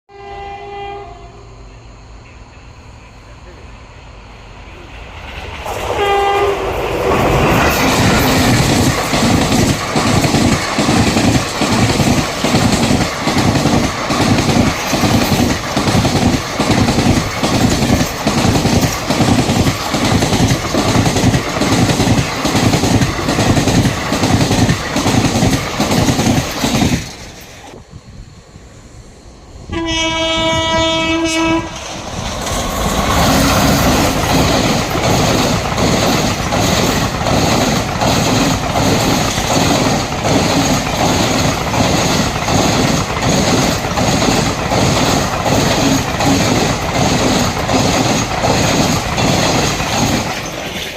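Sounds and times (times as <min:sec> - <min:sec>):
train horn: 0:00.1 - 0:02.4, 0:05.9 - 0:06.9, 0:29.7 - 0:31.8
train wheels clattering: 0:05.2 - 0:27.8, 0:31.7 - 0:50.9.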